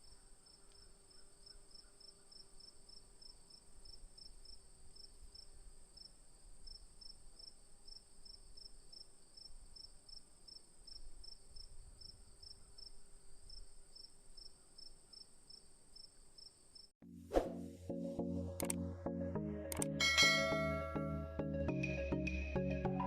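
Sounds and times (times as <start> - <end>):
faint crickets chirping: 0.0 - 16.9.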